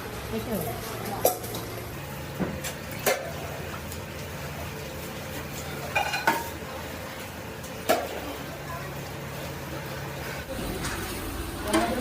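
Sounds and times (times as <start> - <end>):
factory machinery humming: 9.7 - 12.0.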